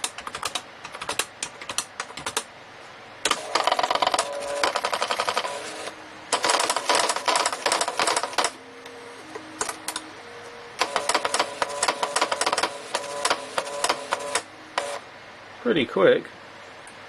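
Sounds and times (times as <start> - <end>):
plotter clicking and rattling: 0.0 - 2.5, 3.3 - 8.6, 10.8 - 15.0
faint motor hum: 0.0 - 17.0.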